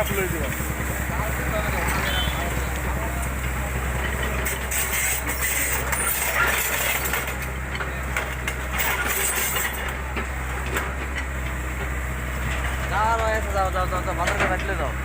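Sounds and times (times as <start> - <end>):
diesel engine running: 0.0 - 15.0
knocks and clatter: 14.2 - 14.9.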